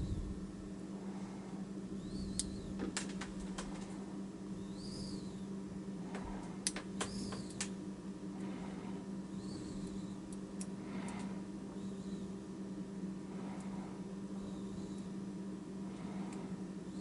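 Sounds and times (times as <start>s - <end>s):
low hum: 0.0s - 17.0s
faint high chirp: 4.6s - 5.4s.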